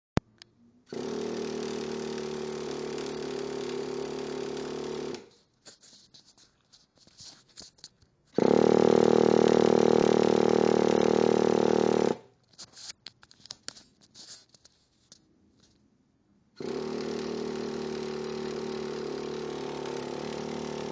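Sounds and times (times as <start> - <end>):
electric starter whine: 0.9 - 5.3, 8.4 - 12.3, 16.6 - 20.9.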